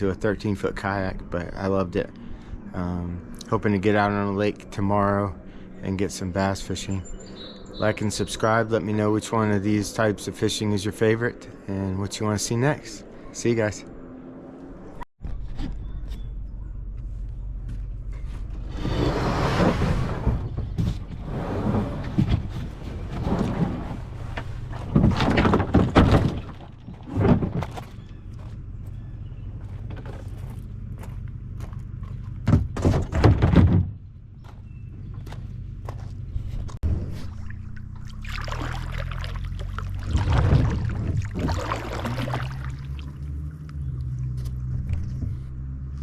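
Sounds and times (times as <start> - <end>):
knocks and thumps: 22.0 - 28.0, 32.4 - 35.4
water splashing around a kayak: 37.1 - 44.1.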